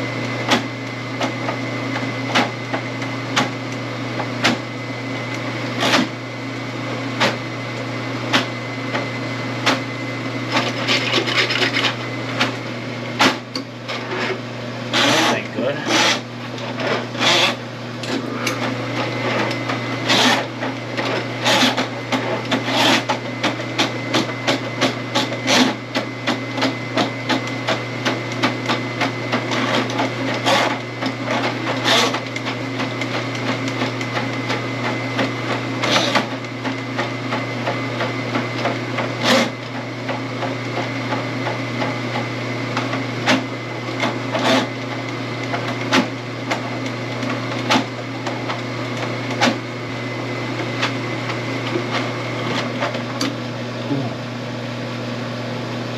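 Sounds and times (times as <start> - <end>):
drain snake motor hum: 0.0 - 55.9
cable clattering in drain: 10.5 - 11.9.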